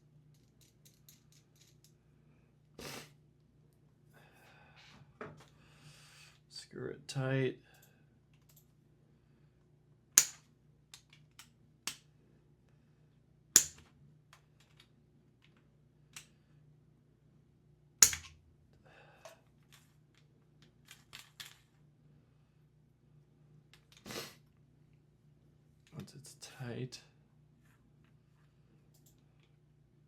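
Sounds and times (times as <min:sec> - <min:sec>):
plastic parts snapping: 0:10.2 - 0:12.0, 0:13.6 - 0:13.9, 0:18.0 - 0:18.4.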